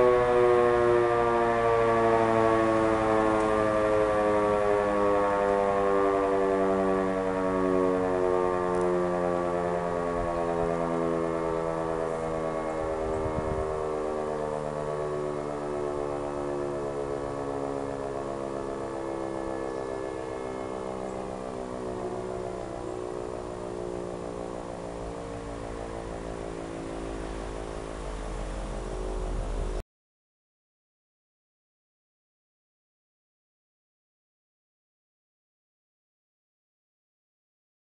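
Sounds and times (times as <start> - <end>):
siren winding down: 0.0 - 29.8.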